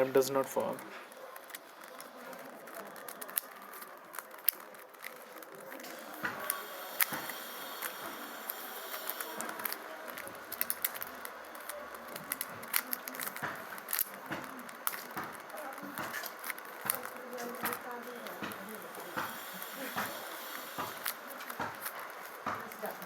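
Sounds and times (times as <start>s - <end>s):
puzzle cube layers clicking: 0.0s - 23.0s.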